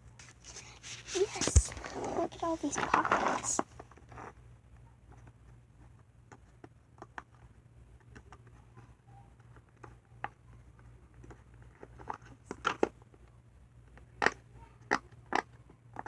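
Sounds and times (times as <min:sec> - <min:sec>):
toys clicking and crinkling: 0:00.2 - 0:03.6.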